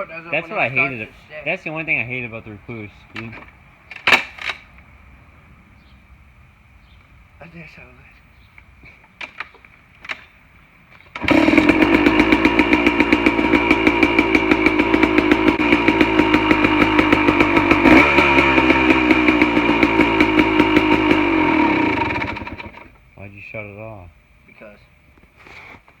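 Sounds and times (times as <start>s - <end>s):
dirt bike engine starting and idling: 11.1s - 23.0s.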